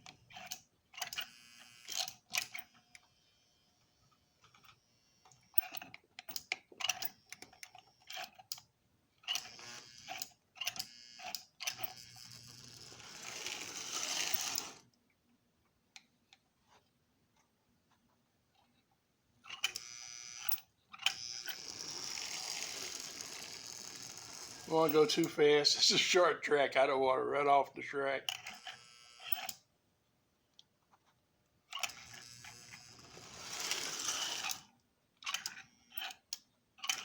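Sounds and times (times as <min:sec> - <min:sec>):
toy train clicks: 0:00.0 - 0:03.1, 0:04.4 - 0:14.9, 0:19.5 - 0:25.4, 0:28.3 - 0:29.6, 0:31.7 - 0:37.0
toy train motor and gears running: 0:00.0 - 0:14.9, 0:19.5 - 0:26.2, 0:28.0 - 0:29.6, 0:31.7 - 0:37.0.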